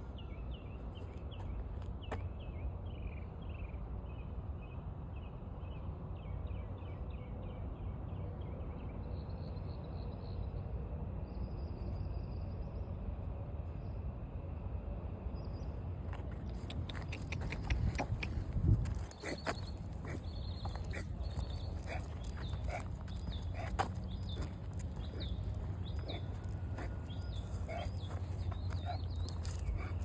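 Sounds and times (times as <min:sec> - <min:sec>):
songbird chirping: 0:15.3 - 0:30.0.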